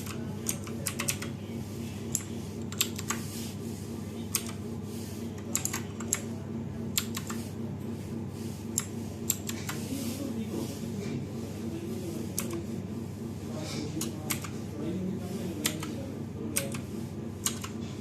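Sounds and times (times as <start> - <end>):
keyboard keys clicking: 0.0 - 1.3, 2.1 - 3.2, 4.3 - 4.6, 5.4 - 6.3, 6.9 - 7.4, 8.7 - 9.8, 12.4 - 12.6, 14.0 - 14.6, 15.6 - 16.0, 16.6 - 16.8, 17.4 - 17.8
steady low hum: 0.0 - 18.0.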